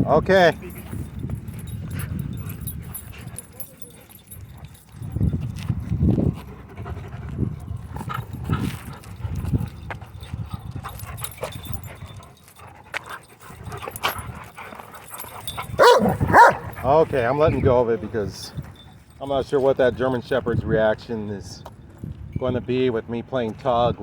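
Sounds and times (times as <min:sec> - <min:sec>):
dog panting hard: 0:00.7 - 0:16.9.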